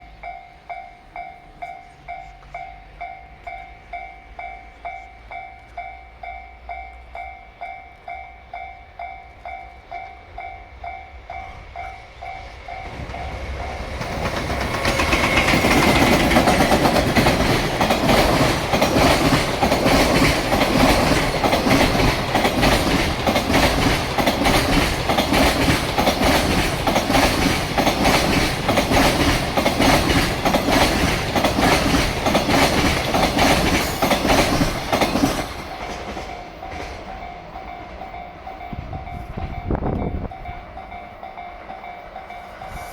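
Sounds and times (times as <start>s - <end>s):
level-crossing warning bell ringing: 0.0s - 42.9s
train wheels clattering over rail joints: 11.4s - 38.3s.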